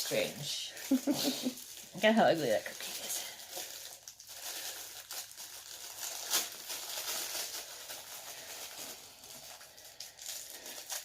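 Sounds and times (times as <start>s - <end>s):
plastic packaging crinkling: 0.0s - 11.0s.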